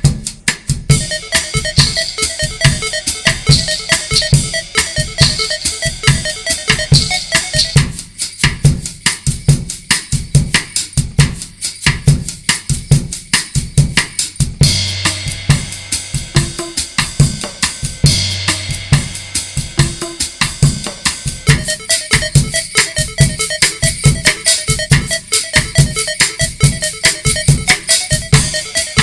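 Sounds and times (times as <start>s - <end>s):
drum kit playing fast beat: 0.0s - 29.0s.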